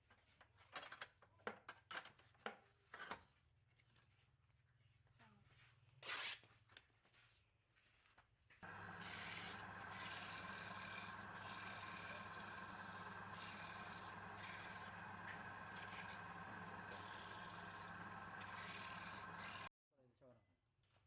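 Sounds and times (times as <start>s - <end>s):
tool rubbing against spinning wood: 8.6s - 19.7s
wood lathe motor humming: 8.6s - 19.7s.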